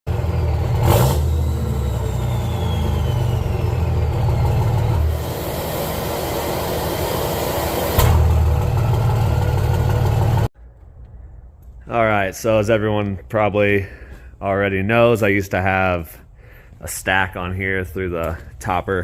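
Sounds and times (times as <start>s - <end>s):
diesel engine running loud: 0.1s - 10.5s
turbo whistle: 1.4s - 4.0s.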